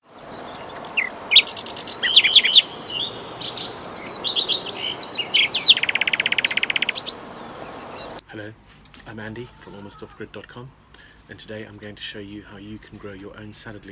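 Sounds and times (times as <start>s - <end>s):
fast even bird trill: 0.0s - 8.3s
small birds chirping and whistling: 0.0s - 8.3s.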